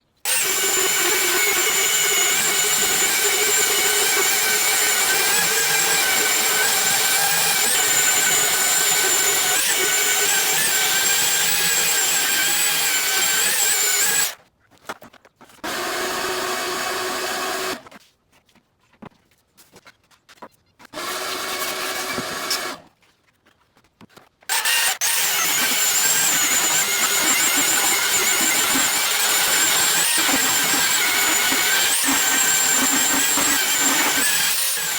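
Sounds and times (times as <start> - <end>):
power tool motor whining: 0.3 - 14.4, 15.7 - 17.9, 21.0 - 22.8, 24.5 - 34.9.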